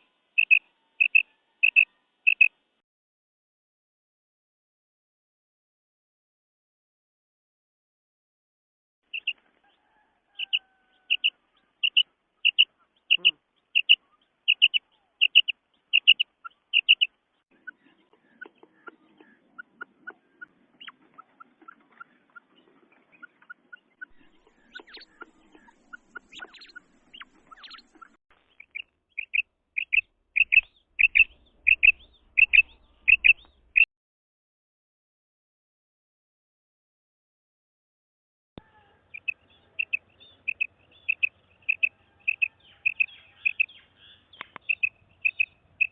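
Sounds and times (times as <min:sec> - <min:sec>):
quail calling: 0:00.0 - 0:02.5, 0:09.1 - 0:33.9, 0:38.6 - 0:45.9.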